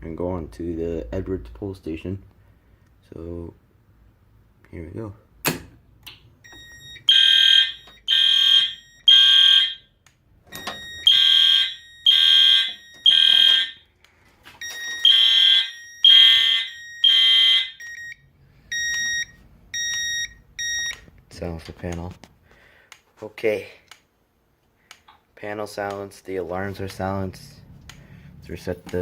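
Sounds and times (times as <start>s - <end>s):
fire alarm horns blasting: 6.4s - 10.0s, 10.6s - 13.9s, 14.6s - 21.0s.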